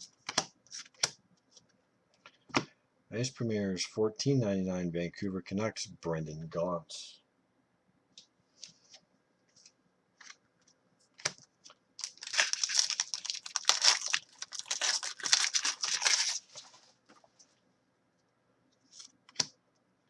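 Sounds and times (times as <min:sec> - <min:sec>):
wrapper tearing and crinkling: 0:12.0 - 0:16.6.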